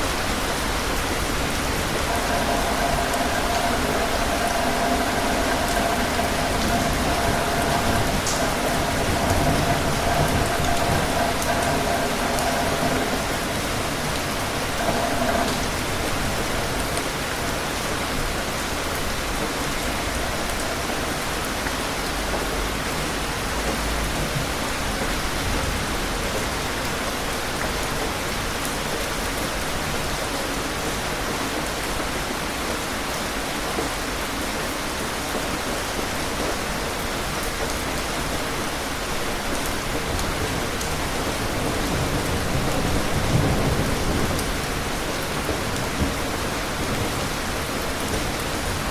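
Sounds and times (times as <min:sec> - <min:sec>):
low rumble of thunder: 0:00.0 - 0:26.7, 0:39.6 - 0:48.9
heavy rain pattering: 0:00.0 - 0:48.9.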